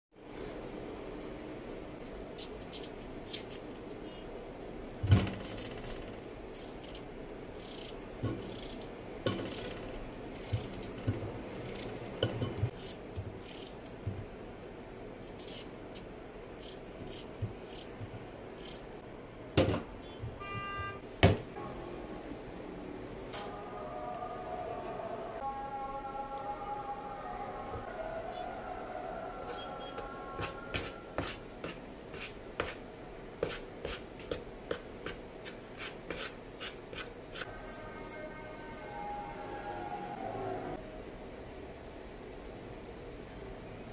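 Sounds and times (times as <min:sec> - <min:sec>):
high-pitched tone: 0:21.6 - 0:31.2, 0:37.5 - 0:40.8.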